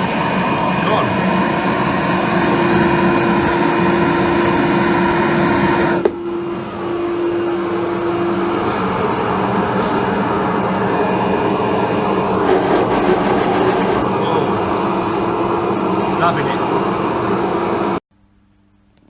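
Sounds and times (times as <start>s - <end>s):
dust extractor rushing air: 12.2s - 14.8s.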